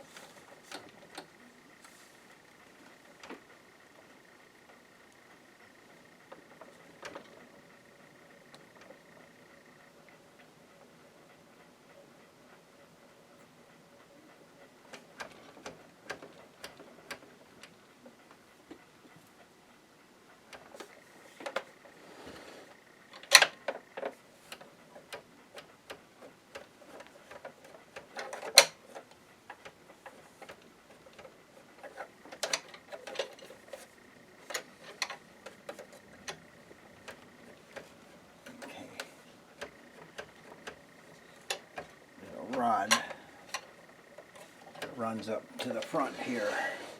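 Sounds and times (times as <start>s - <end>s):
hand tools clicking on plastic: 22.6s - 45.0s.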